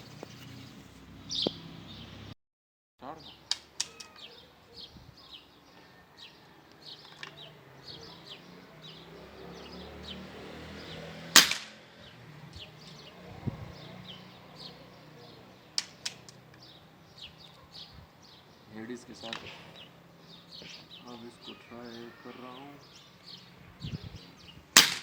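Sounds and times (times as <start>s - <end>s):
birds chirping faintly: 0.0s - 2.4s, 3.0s - 25.0s
air rifle shot: 11.4s - 11.8s, 24.8s - 25.0s.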